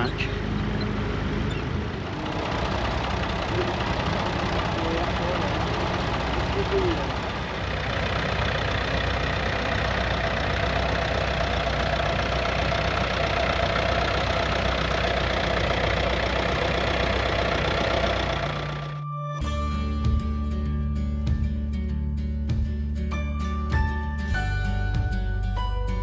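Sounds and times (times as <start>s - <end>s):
tractor engine running: 0.0s - 26.0s
music: 18.9s - 26.0s.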